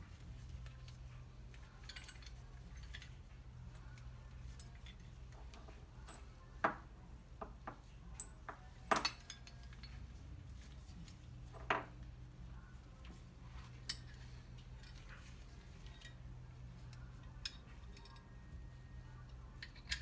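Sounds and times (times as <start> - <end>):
small metal parts clinking: 19.5 - 20.0.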